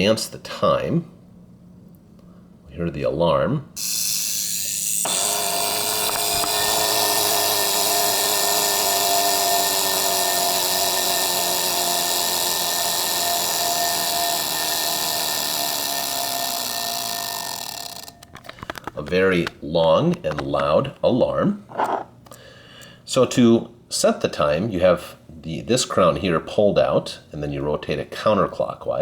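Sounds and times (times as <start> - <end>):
alarm clock ringing: 3.8 - 18.3.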